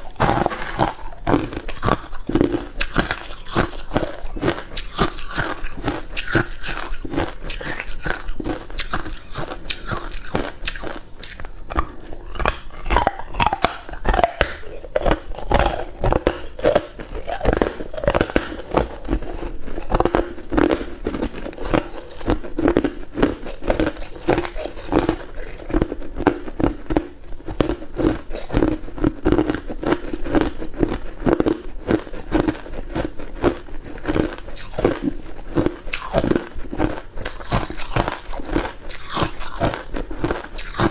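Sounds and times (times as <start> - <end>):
person chewing ice cubes: 0.0 - 40.9.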